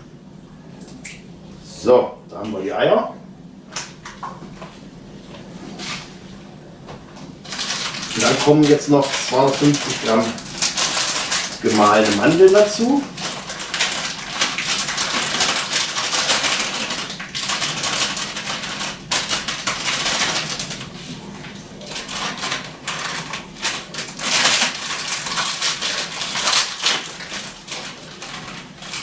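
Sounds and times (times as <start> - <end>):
packet rustling and crinkling: 7.4 - 29.0.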